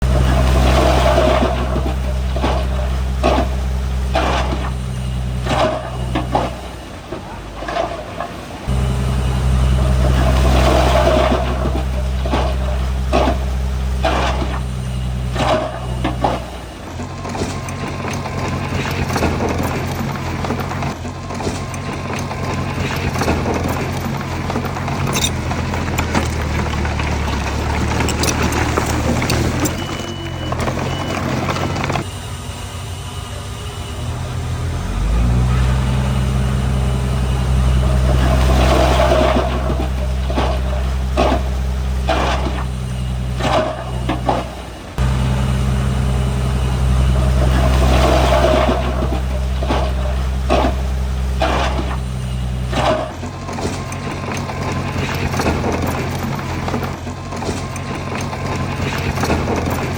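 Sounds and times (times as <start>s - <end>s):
metallic clanking of tracks: 0.0s - 32.1s, 33.8s - 59.9s
heavy machinery diesel engine: 0.0s - 59.9s
sharp knocks or squeaks: 22.8s - 32.0s.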